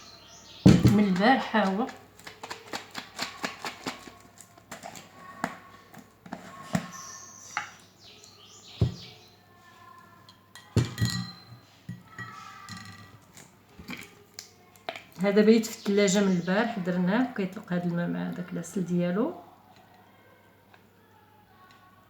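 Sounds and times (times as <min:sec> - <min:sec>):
container clicks and knocks: 0:00.7 - 0:05.6, 0:08.8 - 0:09.1, 0:10.6 - 0:13.2.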